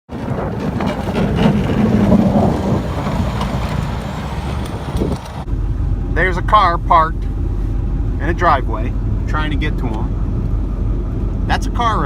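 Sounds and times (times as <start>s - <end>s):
wind gusting over microphone: 0.1s - 12.0s.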